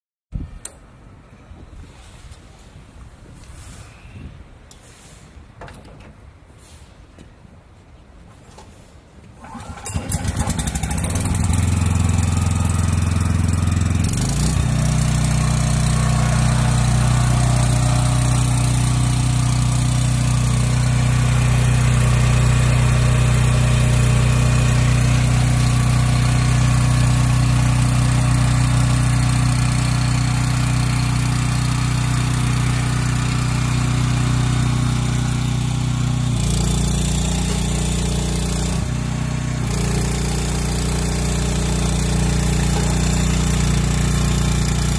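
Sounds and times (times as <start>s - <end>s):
generator engine running: 9.4s - 44.9s.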